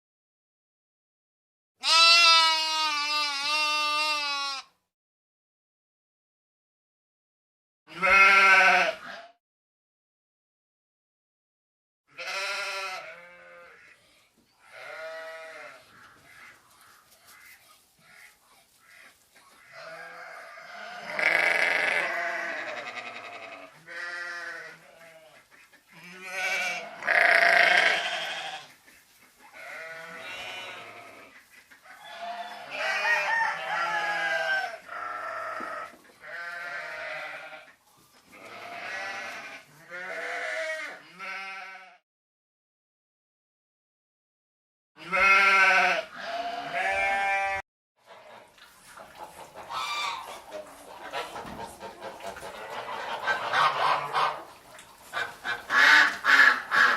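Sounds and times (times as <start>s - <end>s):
livestock bleating: 1.8s - 4.7s, 7.9s - 9.4s, 12.1s - 14.0s, 14.6s - 18.3s, 19.6s - 25.4s, 26.0s - 28.7s, 29.6s - 31.3s, 31.9s - 37.7s, 38.3s - 42.0s, 45.0s - 47.6s.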